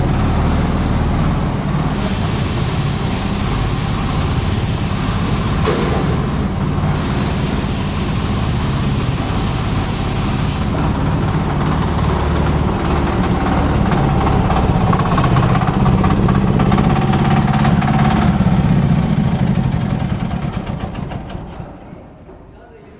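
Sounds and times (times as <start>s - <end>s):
concrete mixer engine running: 0.0s - 22.3s.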